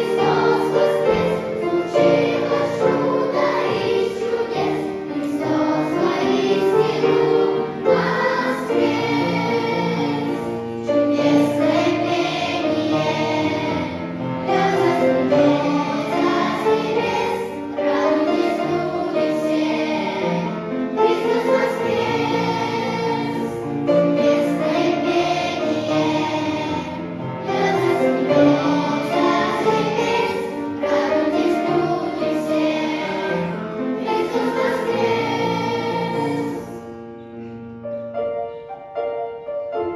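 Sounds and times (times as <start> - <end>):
choir singing a hymn: 0.0 - 37.0.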